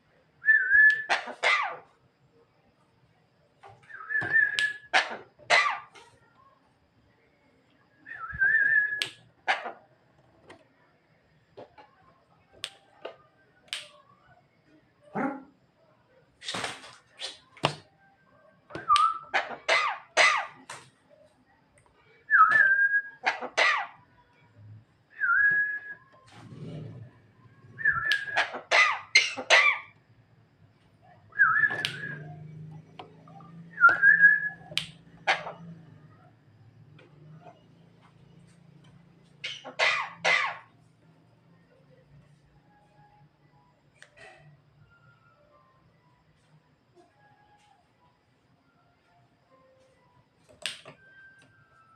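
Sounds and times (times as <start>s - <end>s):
bird whistles: 3.9s - 5.0s, 18.8s - 19.9s, 27.8s - 29.8s, 31.3s - 32.4s, 33.7s - 35.4s
bird rasping cough-like notes: 39.7s - 40.6s.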